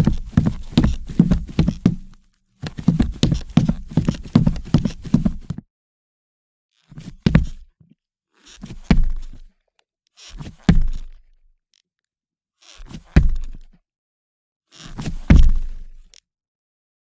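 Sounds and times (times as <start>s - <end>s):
boots on wooden floor: 0.0s - 5.6s, 7.3s - 7.6s.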